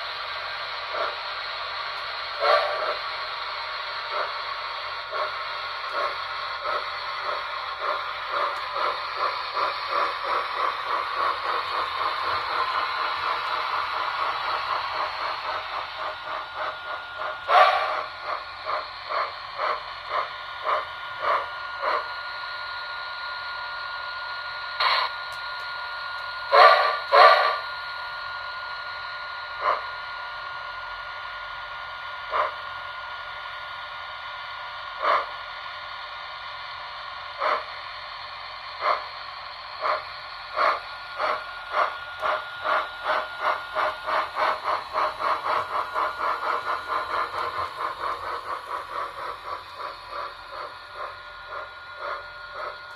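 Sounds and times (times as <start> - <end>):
model train hiss and hum: 0.0 - 52.9
model train clicks: 5.0 - 22.0, 39.8 - 52.9.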